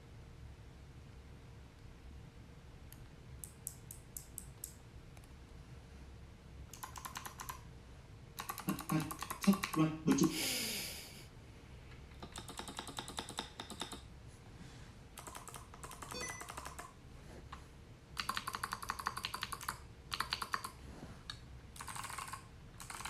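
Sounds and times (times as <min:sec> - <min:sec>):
clicky mechanical keyboard typing: 0:06.7 - 0:07.7, 0:08.4 - 0:10.3, 0:12.1 - 0:14.1, 0:15.2 - 0:17.0, 0:18.2 - 0:23.0.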